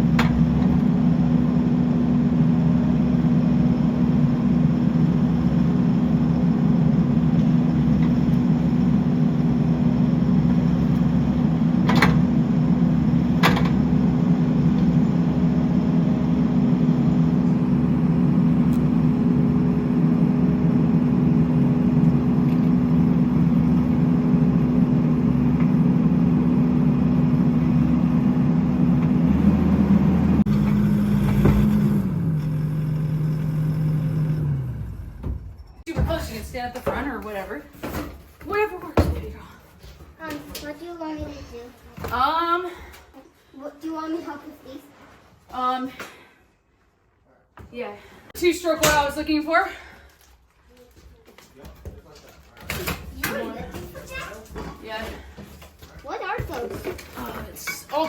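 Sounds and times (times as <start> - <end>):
skid steer engine running: 0.0 - 36.4.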